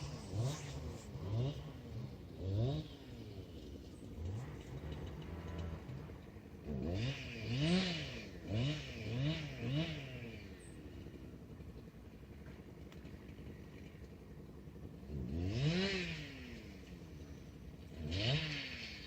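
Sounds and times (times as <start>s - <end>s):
motor revving: 0.0s - 10.5s, 15.1s - 19.0s.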